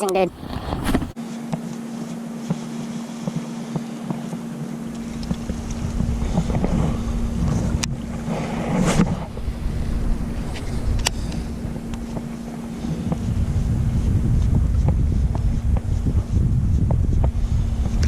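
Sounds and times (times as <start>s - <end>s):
wind on microphone: 0.0s - 1.2s, 4.9s - 18.0s
steady low hum: 0.0s - 18.0s.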